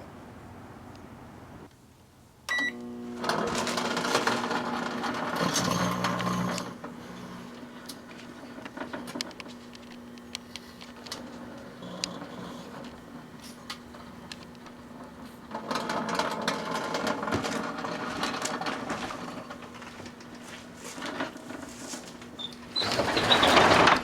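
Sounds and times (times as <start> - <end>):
microwave oven humming: 2.4 - 23.9
microwave oven beeping: 2.5 - 17.1, 22.3 - 23.9.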